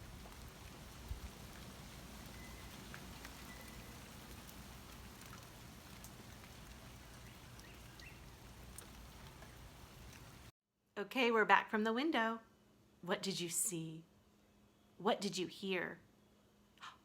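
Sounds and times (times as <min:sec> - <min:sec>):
rain falling: 0:00.0 - 0:10.5
drip ticks: 0:01.5 - 0:10.4.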